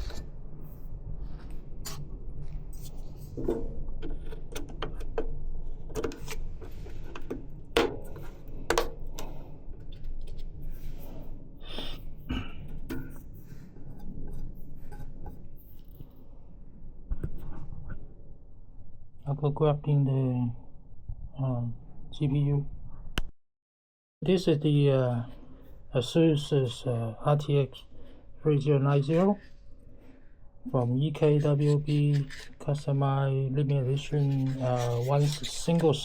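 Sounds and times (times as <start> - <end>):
steady low hum: 24.2 - 36.0.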